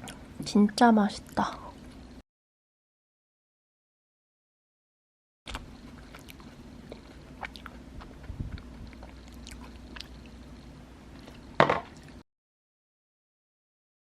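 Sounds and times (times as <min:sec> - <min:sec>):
person chewing: 0:05.5 - 0:12.2.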